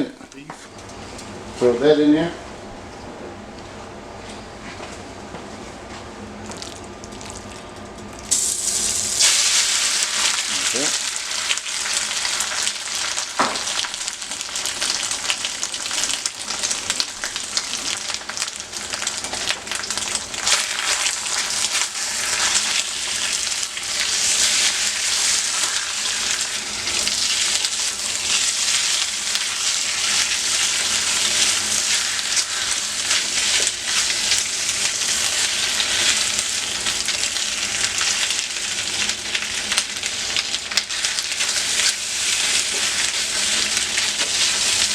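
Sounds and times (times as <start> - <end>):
food sizzling in hot oil: 6.5 - 44.9.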